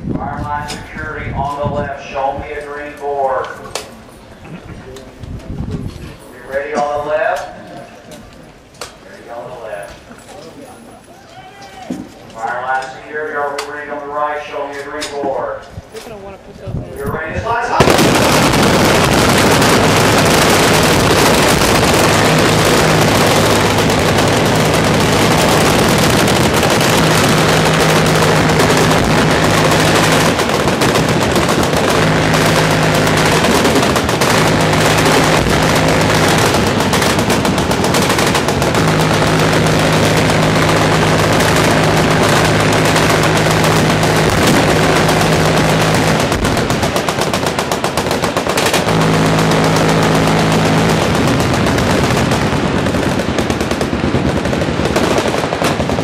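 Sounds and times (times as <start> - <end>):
machine guns firing: 17.5 - 56.0.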